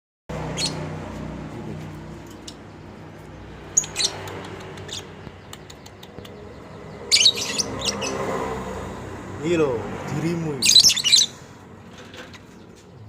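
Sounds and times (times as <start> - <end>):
lovebirds high chirps: 0.5 - 0.8, 2.2 - 8.4, 10.6 - 11.5.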